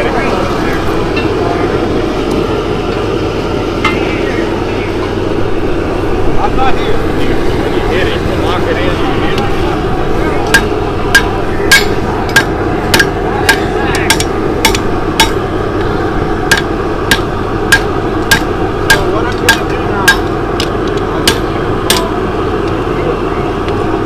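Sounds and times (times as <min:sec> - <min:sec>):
steady background noise: 0:00.0 - 0:24.0
hammer striking hot steel on anvil: 0:09.3 - 0:22.9.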